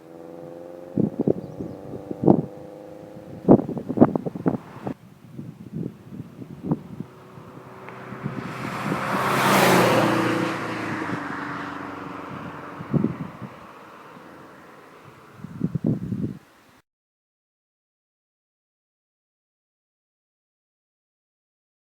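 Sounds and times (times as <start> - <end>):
car driving past: 0.0 - 5.0, 6.2 - 15.7
wind buffeting the microphone: 0.0 - 16.5.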